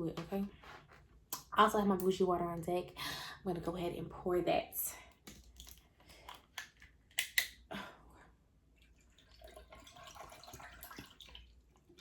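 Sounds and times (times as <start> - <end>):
water pouring into a glass: 8.8 - 12.0.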